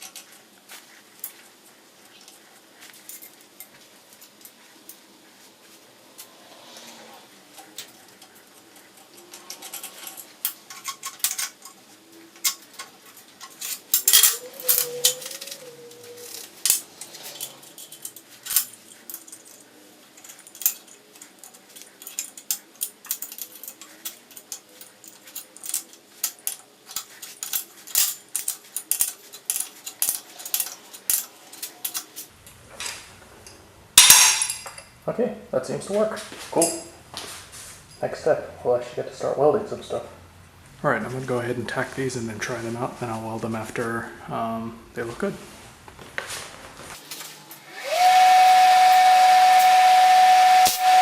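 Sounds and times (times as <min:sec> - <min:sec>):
hand tools clinking on steel: 0:07.5 - 0:35.0, 0:36.6 - 0:37.0.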